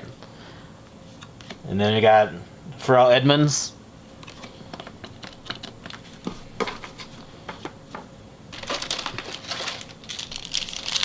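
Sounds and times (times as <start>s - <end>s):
crinkling rustle: 8.5s - 11.0s.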